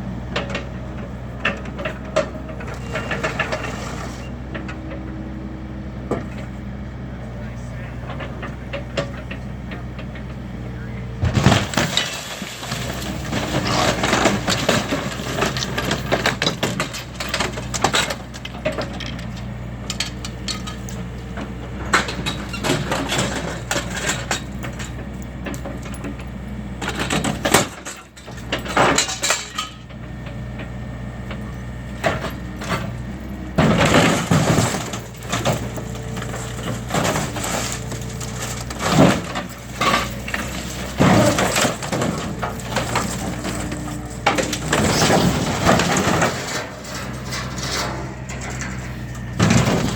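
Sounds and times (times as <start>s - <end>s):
machine engine humming: 29.7s - 49.9s.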